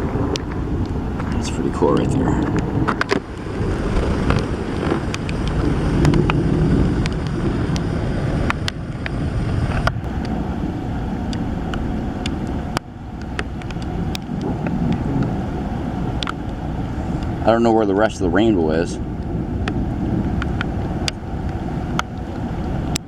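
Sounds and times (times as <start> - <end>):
wind rumbling on microphone: 0.0 - 23.0
sharp ticks: 10.0 - 17.5.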